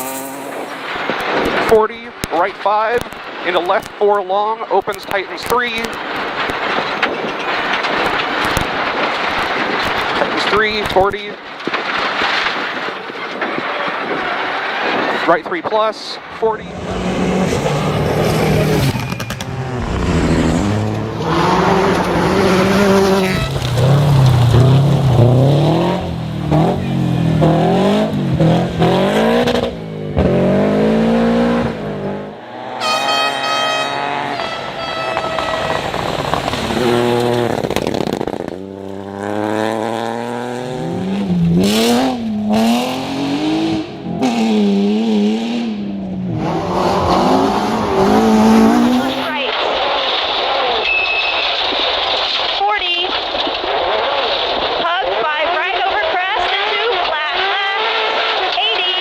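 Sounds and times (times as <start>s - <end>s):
rally car engine revving: 0.0s - 2.3s, 16.3s - 50.4s
high-pitched tone: 32.8s - 36.3s.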